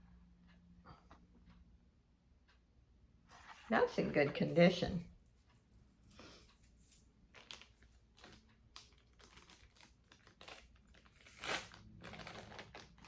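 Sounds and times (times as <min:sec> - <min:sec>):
crinkling rustles: 0:07.3 - 0:13.0.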